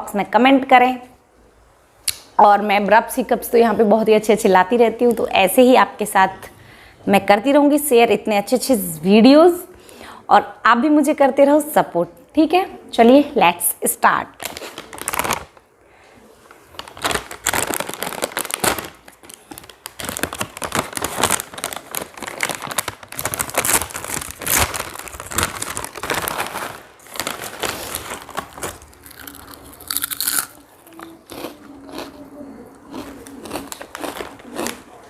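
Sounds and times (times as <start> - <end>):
plastic chip packet crinkling: 14.4 - 15.7, 16.5 - 32.2, 32.9 - 34.9.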